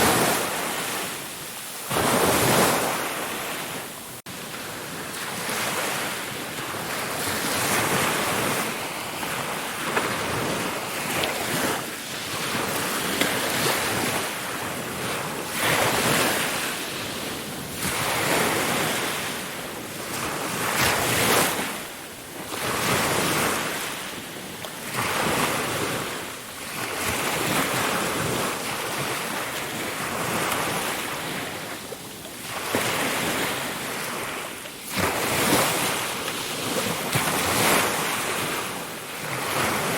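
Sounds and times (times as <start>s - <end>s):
ocean waves breaking: 0.0s - 39.9s.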